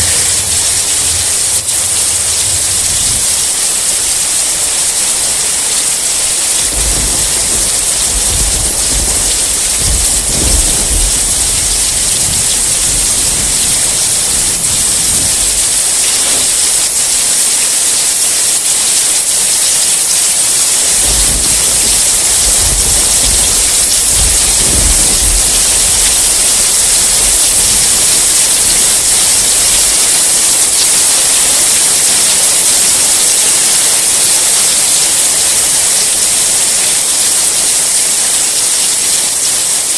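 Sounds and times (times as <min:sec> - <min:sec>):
low thunder rolling: 0:00.0 - 0:17.6, 0:20.4 - 0:34.1
heavy rain: 0:00.0 - 0:39.9.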